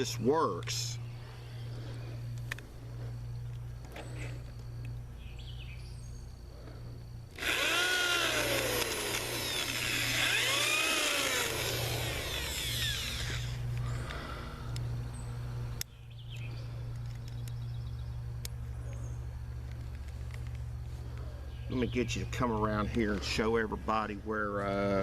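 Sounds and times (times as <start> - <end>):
power drill boring into wood: 7.4 - 13.6.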